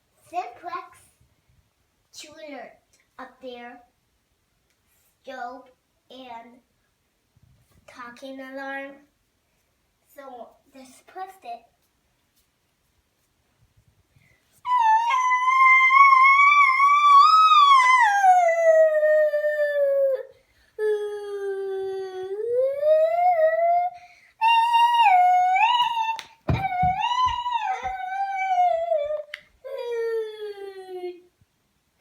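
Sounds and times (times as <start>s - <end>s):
dog howling: 14.7s - 20.2s, 24.4s - 29.2s
low knocks: 26.5s - 28.0s.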